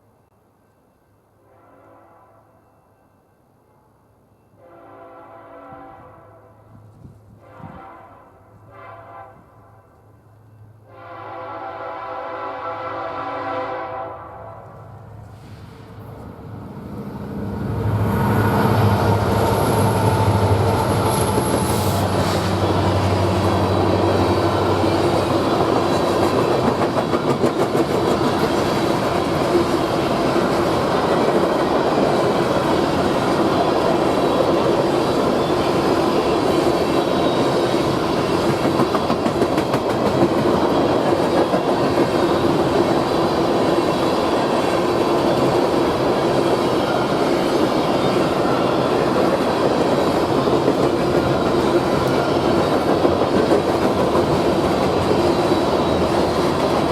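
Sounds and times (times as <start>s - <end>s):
rail cars rumbling by: 0.0s - 56.9s
locomotive engines passing: 14.8s - 56.9s.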